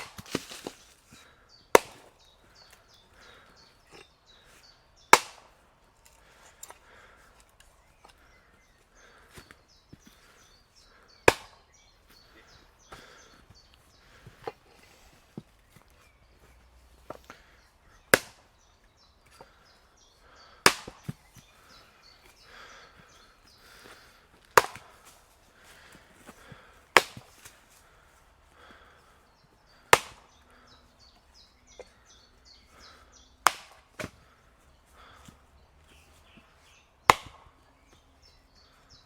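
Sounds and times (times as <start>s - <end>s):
axe chopping wood: 0.0s - 1.0s, 1.7s - 2.8s, 5.0s - 7.0s, 11.2s - 12.2s, 18.1s - 18.5s, 20.4s - 21.6s, 23.8s - 25.2s, 26.3s - 27.6s, 29.7s - 30.6s, 32.8s - 34.3s, 36.4s - 38.0s.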